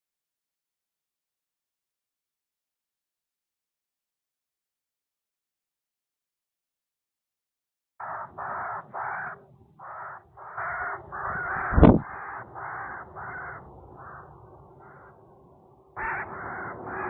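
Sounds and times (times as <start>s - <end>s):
bird harsh calls: 8.0s - 15.4s, 16.0s - 17.0s
loud thump: 11.7s - 12.0s.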